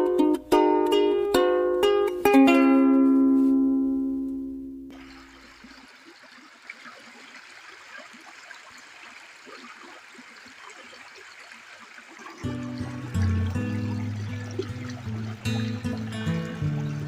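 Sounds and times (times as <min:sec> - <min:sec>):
ukulele music: 0:00.0 - 0:04.9, 0:12.4 - 0:17.0
stream trickling and babbling: 0:04.9 - 0:17.0.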